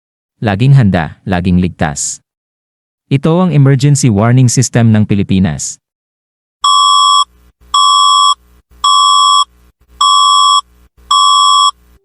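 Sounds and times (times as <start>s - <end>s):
emergency alert beeps: 6.6s - 11.8s.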